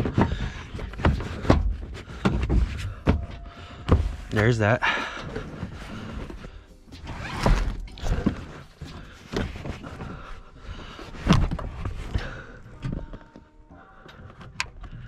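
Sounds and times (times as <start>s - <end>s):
rustling: 5.2s - 12.4s.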